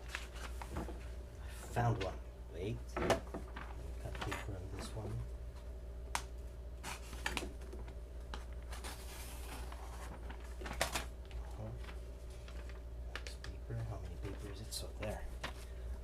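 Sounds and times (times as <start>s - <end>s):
paper rustling: 0.0s - 2.2s, 3.0s - 5.2s, 6.8s - 15.9s.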